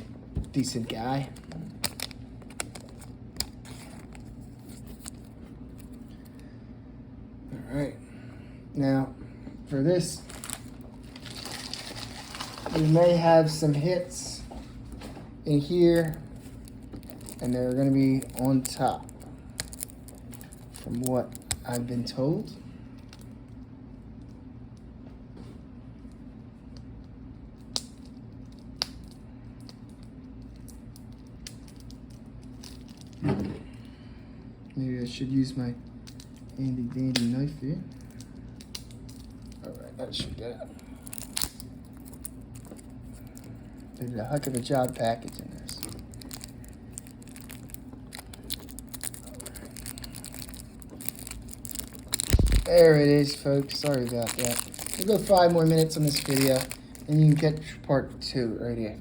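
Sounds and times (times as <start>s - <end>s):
packaging rustling: 0.0s - 6.2s, 10.2s - 13.8s, 15.5s - 21.9s, 40.9s - 57.7s
steady low hum: 0.0s - 59.0s.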